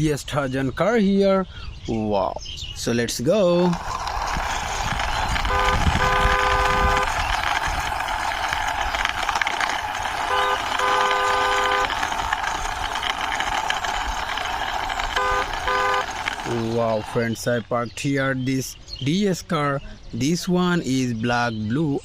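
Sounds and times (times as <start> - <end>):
car driving: 3.5 - 17.4
car horn honking: 5.5 - 7.1, 10.3 - 11.9, 15.2 - 16.2.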